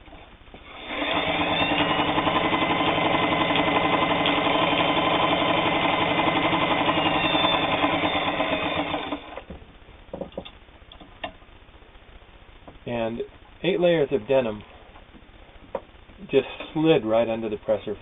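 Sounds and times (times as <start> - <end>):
sewing machine running: 0.6 - 9.4.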